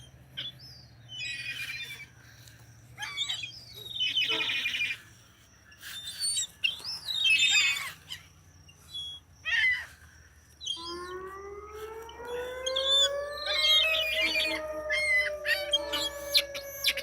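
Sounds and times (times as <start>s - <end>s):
seagulls squawking: 0.0s - 2.1s, 3.0s - 5.0s, 6.4s - 8.3s, 10.6s - 17.0s
long rising tone: 10.8s - 17.0s.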